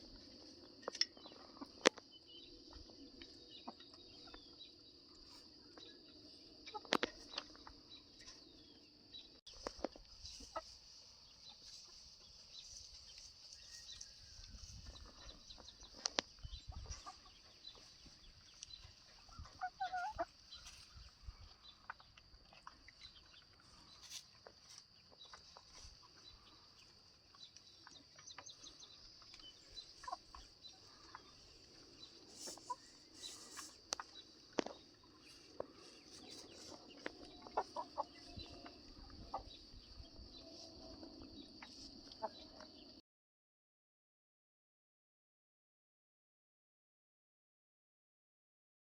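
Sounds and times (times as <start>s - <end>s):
chickens clucking: 0.1s - 2.0s, 2.6s - 4.6s, 5.2s - 8.5s, 9.5s - 42.9s
chicken pitched call: 19.3s - 20.8s.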